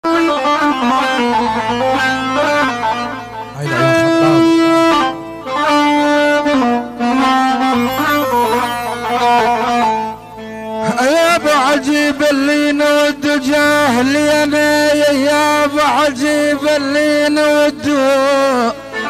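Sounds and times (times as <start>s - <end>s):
plucked string instrument melody: 0.1s - 11.8s.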